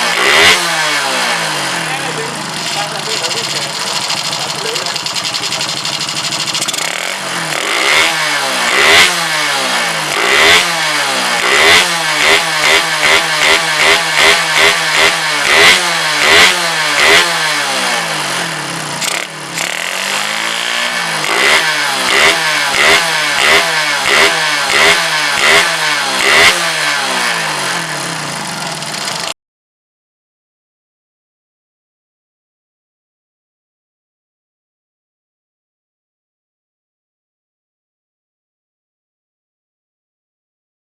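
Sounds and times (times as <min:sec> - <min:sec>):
motorcycle engine revving: 0:00.0 - 0:29.4.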